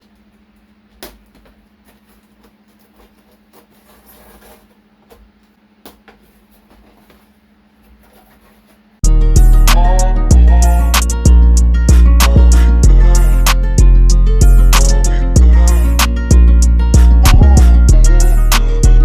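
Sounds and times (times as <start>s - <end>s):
soft rustle: 1.9s - 4.9s.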